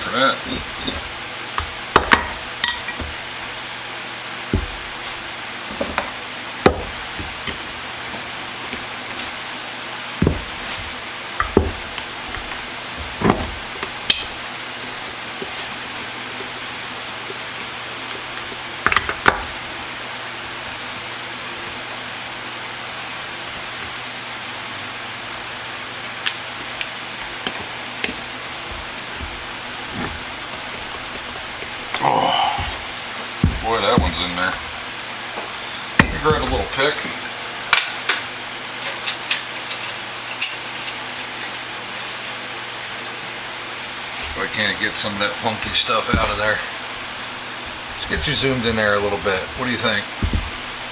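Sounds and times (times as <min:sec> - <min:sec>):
fan-like background hiss: 0:00.0 - 0:50.9
metal tools clinking: 0:38.9 - 0:42.4.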